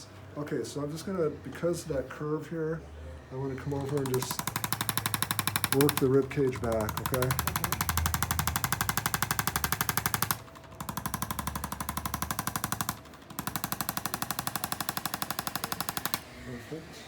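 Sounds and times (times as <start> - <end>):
electric instrument tapping rapidly: 3.8 - 12.1.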